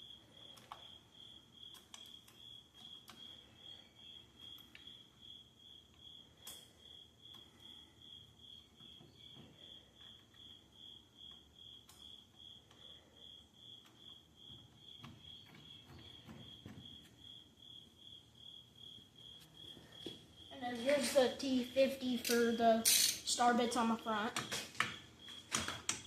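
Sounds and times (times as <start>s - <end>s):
cricket chirping: 0.0s - 20.9s, 24.8s - 25.9s.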